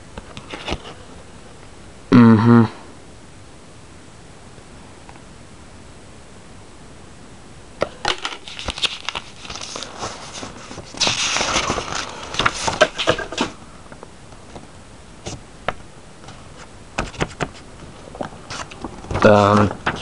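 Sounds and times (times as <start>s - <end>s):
paper and cardboard rustling: 8.1s - 13.6s, 16.6s - 20.0s.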